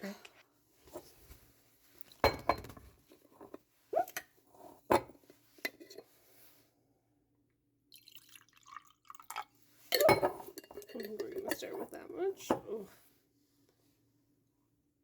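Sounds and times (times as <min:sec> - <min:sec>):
glassware and cutlery clinking: 0:02.1 - 0:02.8, 0:08.0 - 0:12.7.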